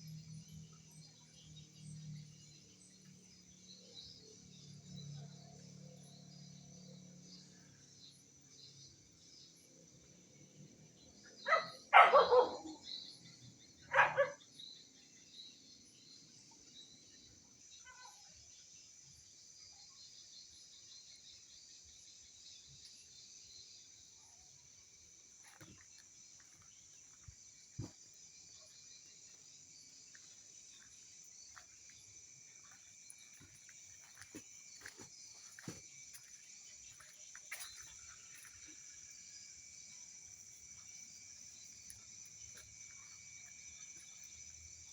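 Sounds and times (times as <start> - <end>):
insects chirring: 0.0 - 44.9
dog barking: 11.4 - 12.8, 13.8 - 14.4.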